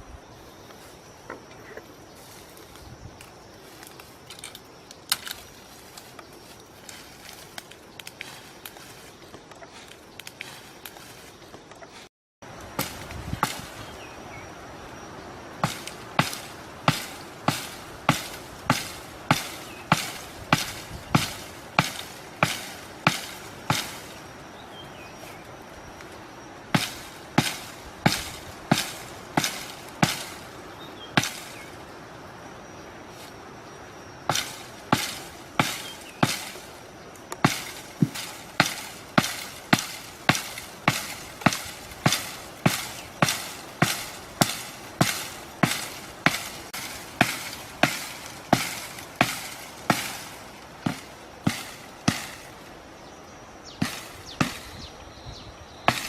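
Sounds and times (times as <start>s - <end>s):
blade chopping wood: 12.8s - 13.8s, 15.6s - 24.2s, 26.7s - 30.5s, 31.2s - 31.7s, 34.3s - 36.7s, 37.3s - 52.5s, 53.8s - 54.8s.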